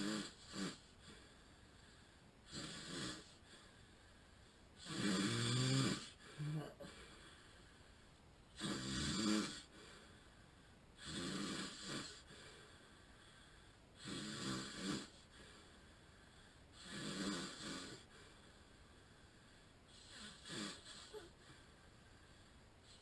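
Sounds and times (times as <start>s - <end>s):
man snoring with rattle: 0.0s - 3.7s, 4.8s - 7.1s, 8.5s - 10.1s, 11.0s - 15.8s, 16.5s - 21.6s.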